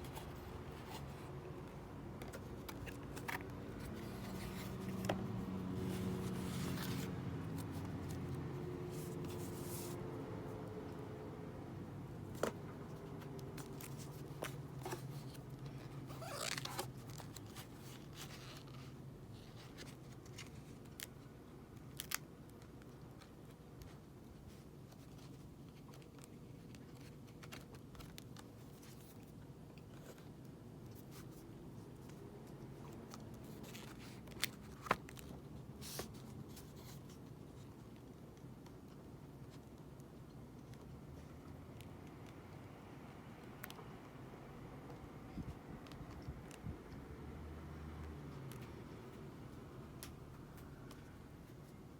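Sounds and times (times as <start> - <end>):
paper and plastic rustling: 0.0 - 10.0.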